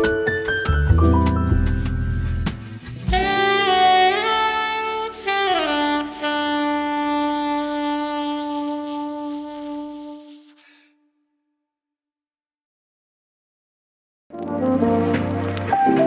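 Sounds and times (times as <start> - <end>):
jazz saxophone: 0.8 - 11.0.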